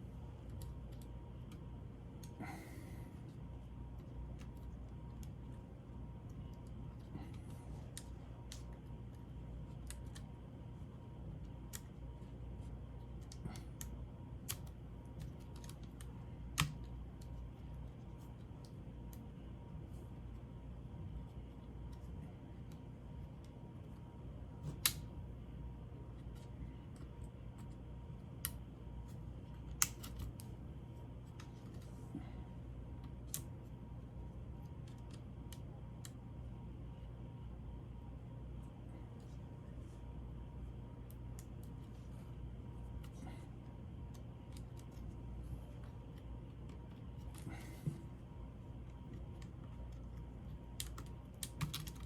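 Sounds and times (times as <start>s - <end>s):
low steady hum: 0.0s - 52.0s
laptop parts clicking and tapping: 13.1s - 17.4s, 48.9s - 52.0s.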